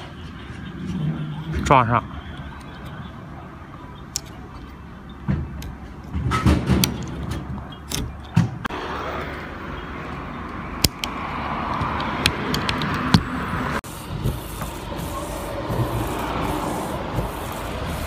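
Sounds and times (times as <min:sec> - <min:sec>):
sharp clicks: 0:10.4 - 0:13.3
windshield wipers swishing: 0:14.0 - 0:18.0.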